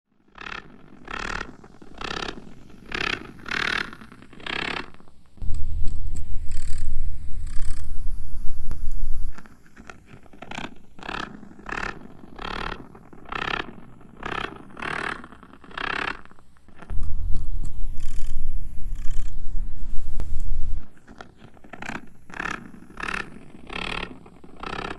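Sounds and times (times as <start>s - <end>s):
loud deep rumble with crackles: 5.4s - 24.9s.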